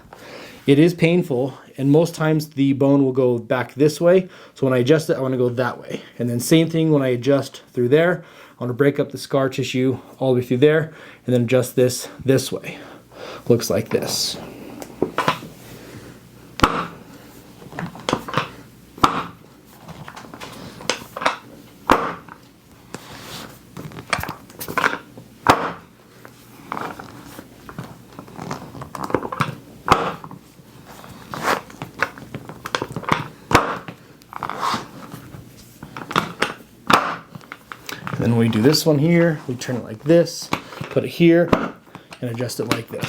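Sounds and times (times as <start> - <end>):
soft handling clicks and rustling: 19.6 - 25.3, 26.1 - 36.7, 37.3 - 43.0.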